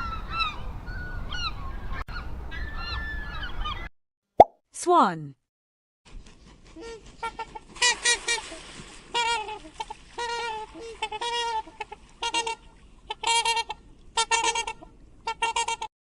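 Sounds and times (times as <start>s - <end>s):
swan honking: 6.7s - 15.9s.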